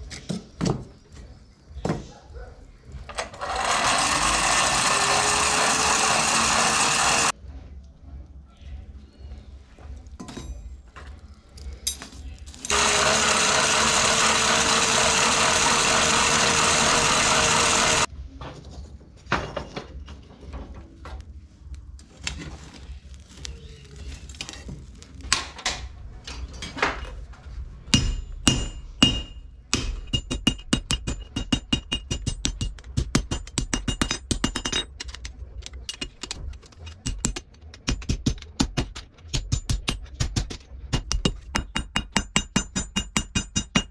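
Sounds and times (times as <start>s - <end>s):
loud machine noise: 3.2s - 7.3s, 12.7s - 18.1s
ringing strikes on steel: 27.9s - 32.7s
knocks and clinks: 28.0s - 38.4s.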